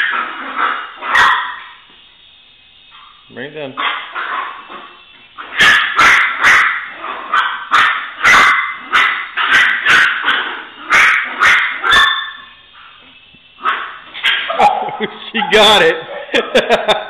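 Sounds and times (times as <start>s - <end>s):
small dog barking: 0.0s - 1.7s, 5.4s - 12.5s, 13.6s - 15.7s.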